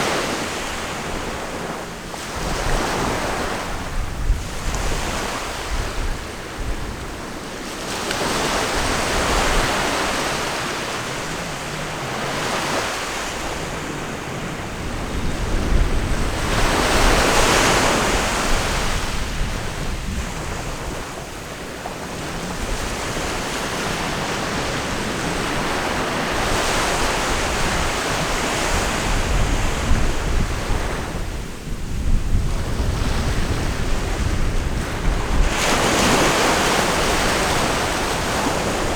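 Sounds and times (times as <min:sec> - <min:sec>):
wind buffeting microphone: 0:00.0 - 0:38.9
waves breaking: 0:32.5 - 0:38.9.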